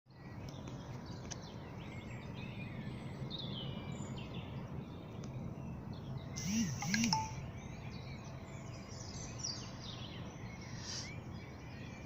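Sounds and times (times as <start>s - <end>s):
birds chirping faintly: 0.1s - 12.0s.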